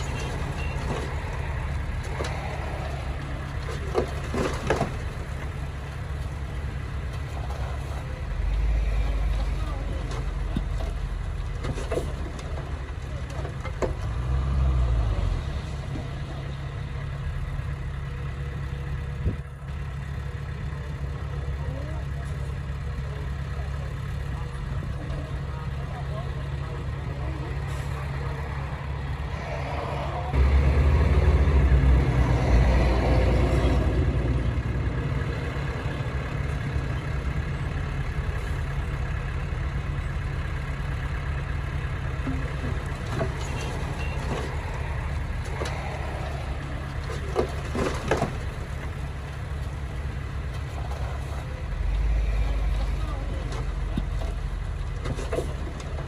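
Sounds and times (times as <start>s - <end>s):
heavy diesel engine drone: 0.0s - 56.0s.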